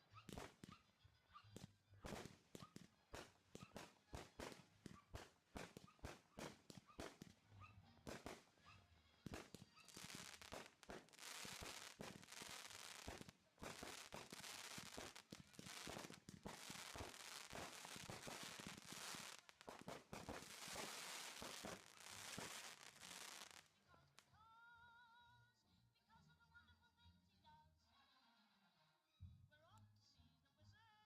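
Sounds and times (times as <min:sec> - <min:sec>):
fireworks popping and crackling: 0:00.0 - 0:00.8, 0:01.5 - 0:23.8.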